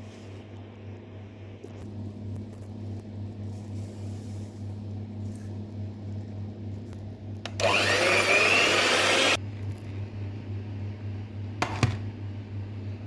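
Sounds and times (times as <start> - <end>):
blender motor whine: 7.5 - 9.4.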